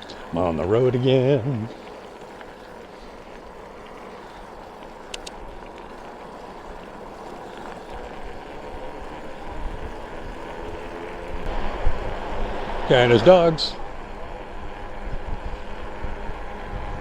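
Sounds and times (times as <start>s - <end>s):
bicycle tyres on road: 0.0s - 17.0s
wind noise: 3.8s - 17.0s
wind rumble on microphone: 8.1s - 17.0s.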